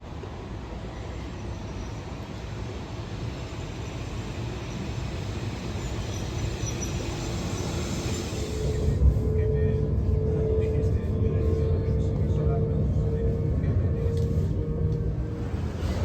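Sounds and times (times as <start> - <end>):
vehicle rumbling in motion: 4.8 - 16.0.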